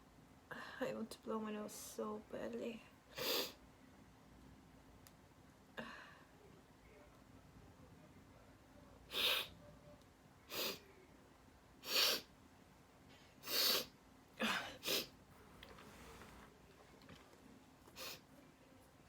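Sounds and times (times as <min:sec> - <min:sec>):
woman sneezing: 0:09.1 - 0:09.6.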